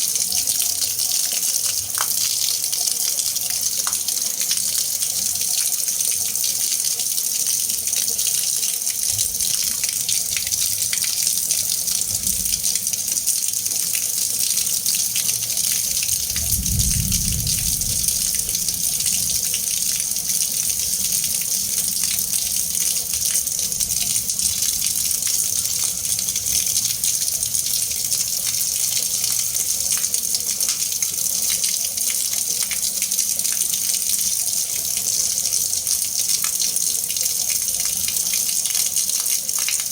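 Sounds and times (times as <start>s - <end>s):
water running and splashing: 0.0s - 39.9s
low rumble: 16.0s - 20.3s.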